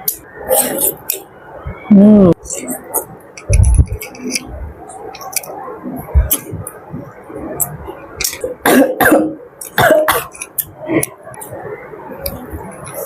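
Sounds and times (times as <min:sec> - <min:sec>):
person coughing hard: 0:08.6 - 0:10.4.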